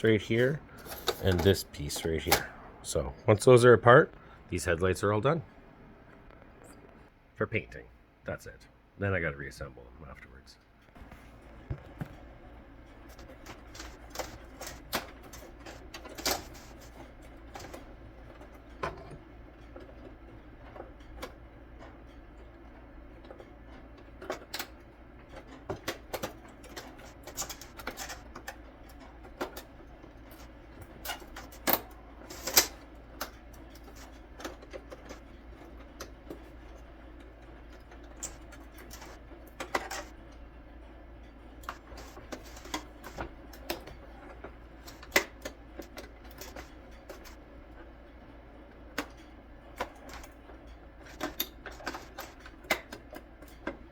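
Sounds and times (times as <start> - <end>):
plastic parts clicking and clacking: 0.8 - 2.5, 13.1 - 22.2, 23.2 - 40.2, 41.6 - 47.4, 48.8 - 53.9.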